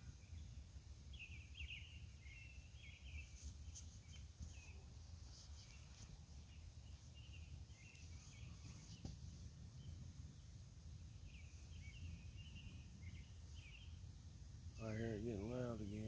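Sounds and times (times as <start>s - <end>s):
bird chirping: 1.1s - 4.8s, 11.1s - 14.0s.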